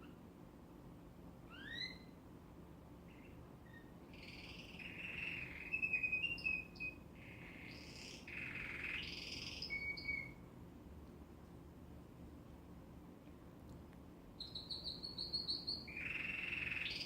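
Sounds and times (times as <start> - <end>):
canary singing: 1.5 - 2.2, 3.1 - 10.4, 14.4 - 17.0.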